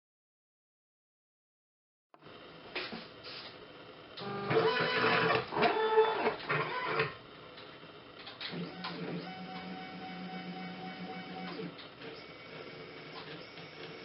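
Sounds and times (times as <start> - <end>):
stepper motors whining: 4.2 - 7.2.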